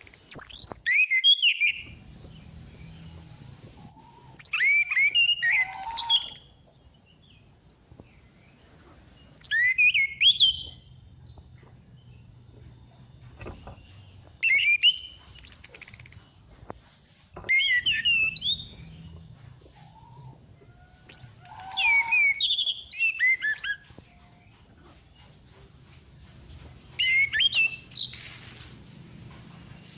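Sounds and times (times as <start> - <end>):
thrush whistled calls: 0.0 - 1.9, 3.8 - 6.6, 9.4 - 11.6, 14.4 - 16.2, 17.4 - 20.4, 21.0 - 24.5, 27.0 - 29.1.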